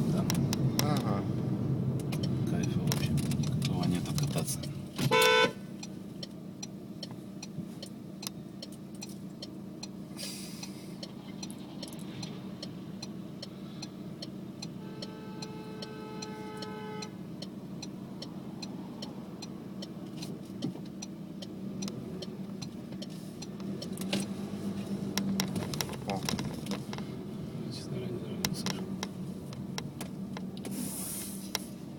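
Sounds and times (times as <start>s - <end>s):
car engine idling: 0.0s - 31.9s
soft steady tone: 11.0s - 20.0s.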